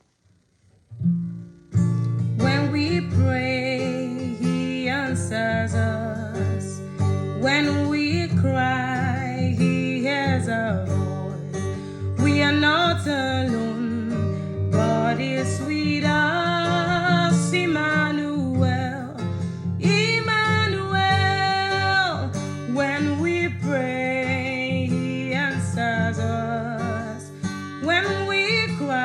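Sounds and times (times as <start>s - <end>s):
gospel song with guitar: 0.9s - 29.0s.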